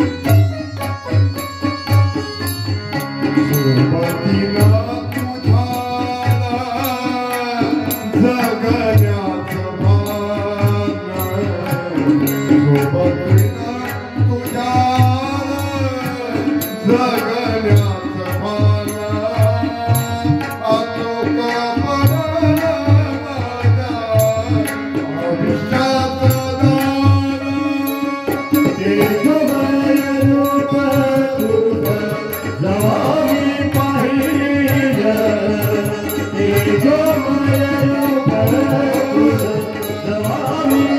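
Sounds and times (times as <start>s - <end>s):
tabla beat: 0.0s - 40.9s
person singing in a deep voice: 28.7s - 40.9s.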